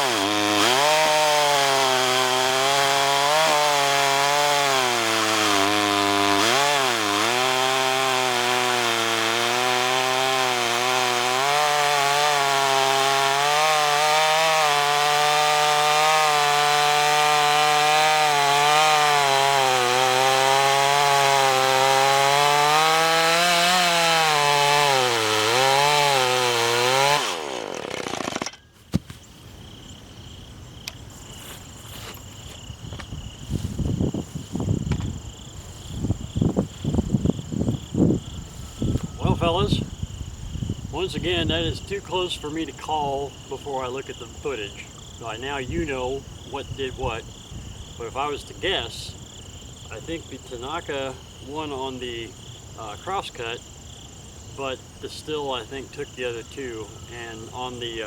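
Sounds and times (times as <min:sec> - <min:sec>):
chainsaw cutting log: 0:00.0 - 0:29.3, 0:30.9 - 0:53.6, 0:54.5 - 0:58.0
faint crickets: 0:27.6 - 0:58.0.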